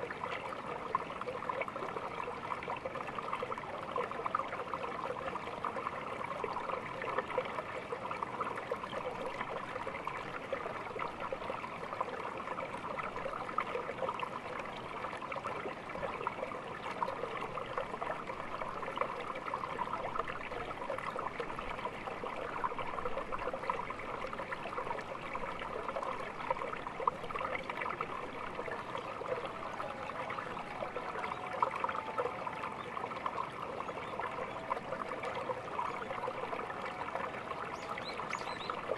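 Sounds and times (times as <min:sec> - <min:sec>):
stream babbling over stones: 0:00.0 - 0:38.9.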